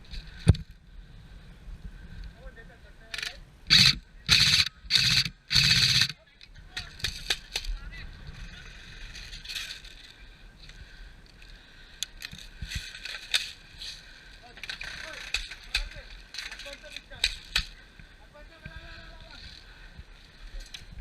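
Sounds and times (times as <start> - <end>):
sharp clicks and pops: 3.1 - 7.8, 14.5 - 17.8
airsoft gun fire bursts: 3.7 - 6.2.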